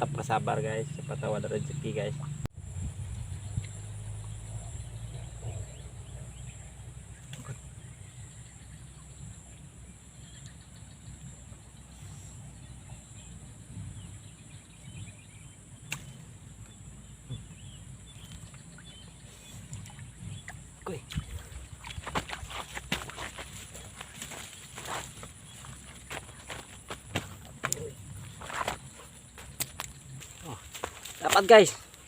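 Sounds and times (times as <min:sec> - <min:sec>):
faint chirps: 0:03.1 - 0:31.9.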